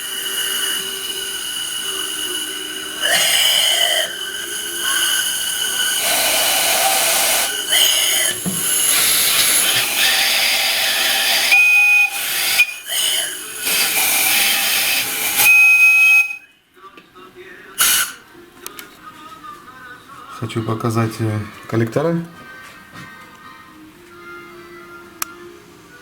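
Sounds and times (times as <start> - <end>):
loud hiss with whistling tone: 0.0 - 16.5, 17.8 - 18.2
sharp whistle note: 0.0 - 16.5, 17.8 - 18.2.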